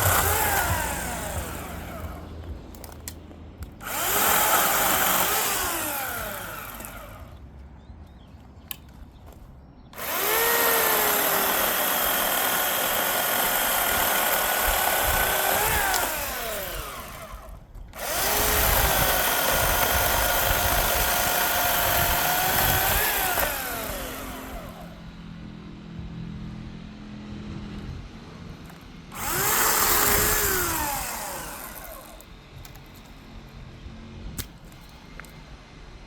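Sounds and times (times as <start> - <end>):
electric chainsaw whining: 0.0 - 3.1, 3.8 - 7.4, 10.0 - 25.1, 29.1 - 32.4.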